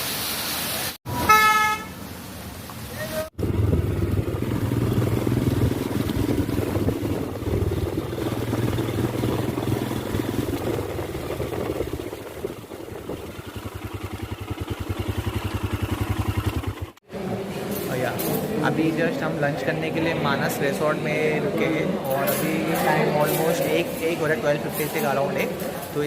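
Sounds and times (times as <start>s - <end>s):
wind and road noise: 1.1s - 17.4s
motorcycle engine running: 3.3s - 17.0s.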